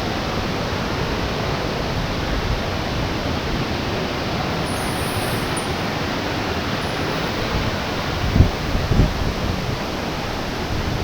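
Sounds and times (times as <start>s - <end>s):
waterfall rushing: 2.9s - 8.8s.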